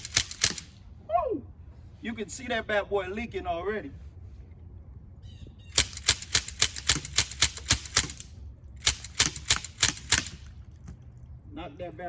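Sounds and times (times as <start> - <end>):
pellet gun firing: 0.0 - 0.8, 5.8 - 10.6.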